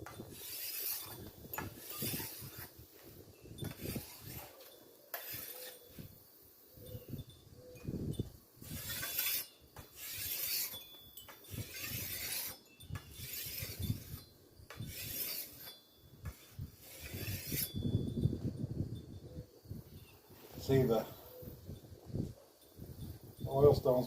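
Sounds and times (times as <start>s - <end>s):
blade rasping on sharpening stone: 0.0s - 2.8s, 3.6s - 6.1s, 8.6s - 17.8s.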